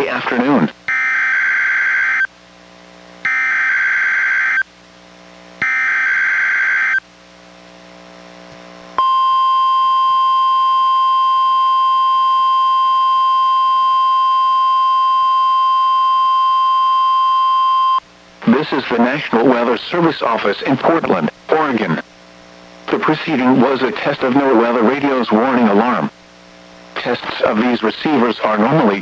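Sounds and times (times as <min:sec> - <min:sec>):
steady warning alarm tone: 0:00.0 - 0:02.3, 0:03.2 - 0:04.7, 0:05.6 - 0:07.0, 0:09.0 - 0:18.0.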